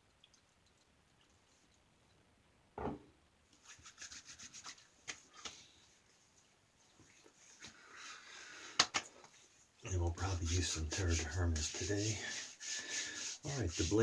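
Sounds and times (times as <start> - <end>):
soft knock: 2.8 - 3.1
hands rubbing and patting skin: 3.5 - 14.0.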